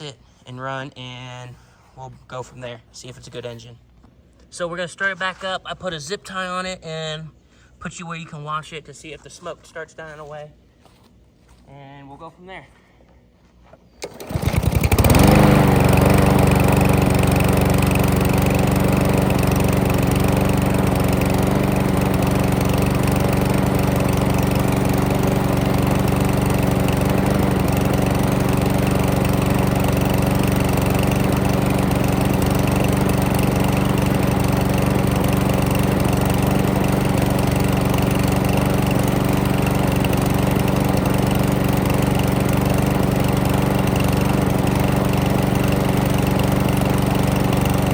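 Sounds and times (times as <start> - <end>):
lawn mower engine running: 14.0 - 47.9.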